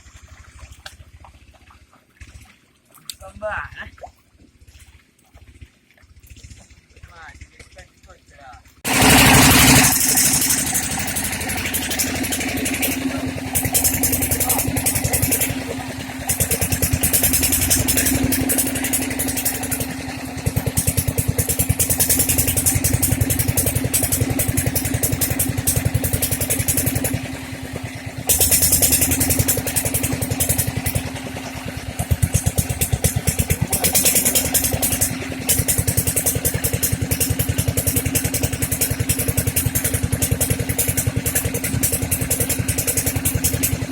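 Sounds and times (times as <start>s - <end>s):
diesel engine running steadily: 4.8s - 43.9s.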